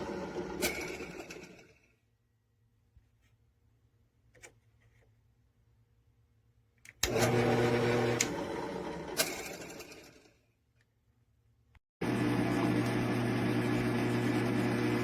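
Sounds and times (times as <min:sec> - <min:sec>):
electric drill motor: 0:07.0 - 0:09.6.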